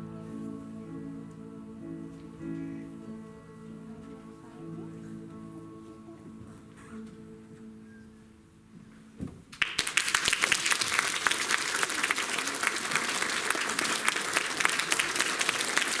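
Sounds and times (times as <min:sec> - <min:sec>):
audience applause: 0:09.6 - 0:16.0.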